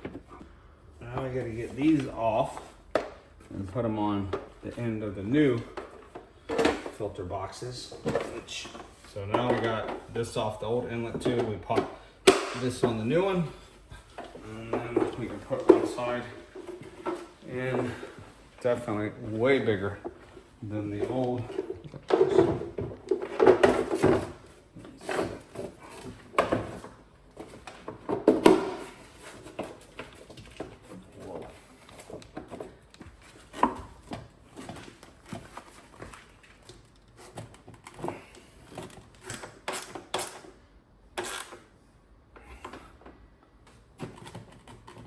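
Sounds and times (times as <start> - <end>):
hollow knocks of car parts: 25.2 - 30.6.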